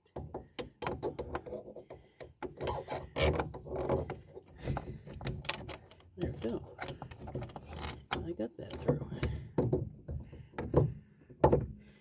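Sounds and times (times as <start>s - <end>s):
metal scraping and clicking: 0.8s - 9.5s.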